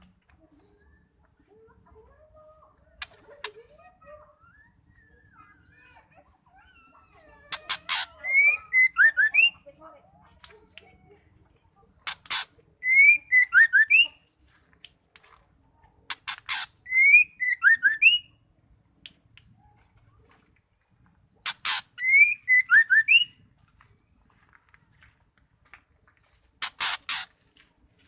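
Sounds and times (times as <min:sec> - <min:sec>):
harsh rasping bird notes: 0:07.5 - 0:09.5, 0:12.0 - 0:14.0, 0:16.1 - 0:18.2, 0:21.4 - 0:23.3, 0:26.6 - 0:27.4
bird whistled call: 0:07.9 - 0:09.6, 0:12.8 - 0:14.1, 0:16.9 - 0:18.3, 0:22.0 - 0:23.4.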